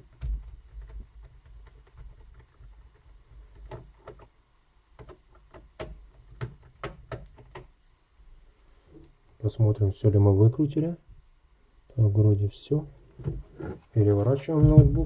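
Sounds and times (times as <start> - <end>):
low handling rumble: 13.2 - 15.0
low thump: 14.6 - 15.0.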